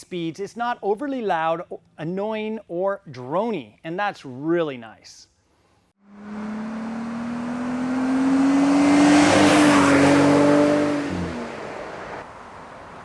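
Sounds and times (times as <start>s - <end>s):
car engine exhaust under throttle: 6.1s - 13.0s.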